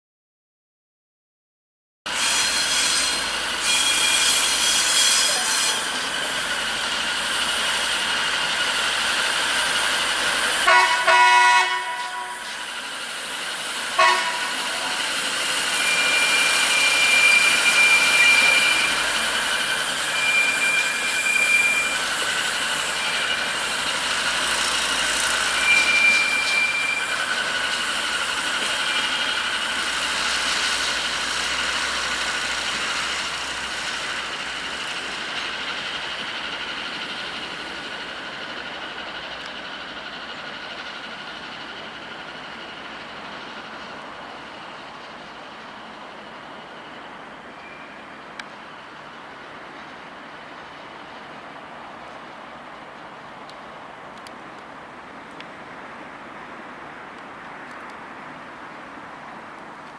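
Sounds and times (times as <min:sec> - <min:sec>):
high wheel squeals: 0:02.1 - 0:51.2
rail vehicle running: 0:02.1 - 0:59.9
rail vehicle horn: 0:10.6 - 0:12.6, 0:13.9 - 0:15.1.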